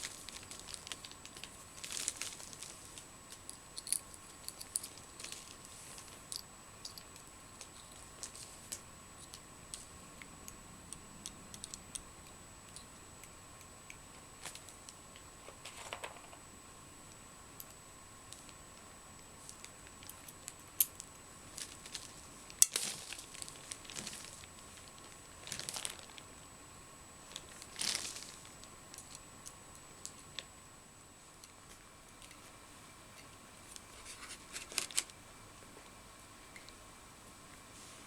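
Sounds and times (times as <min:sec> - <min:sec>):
rustling and crinkling: 0:00.0 - 0:06.5, 0:07.6 - 0:09.9, 0:18.3 - 0:26.3, 0:27.3 - 0:30.5, 0:31.4 - 0:36.8.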